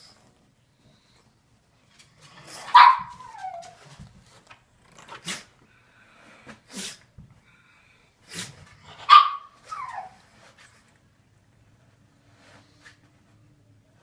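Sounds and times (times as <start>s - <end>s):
dog sneezing: 5.1s - 5.6s, 6.7s - 7.1s, 8.2s - 8.7s.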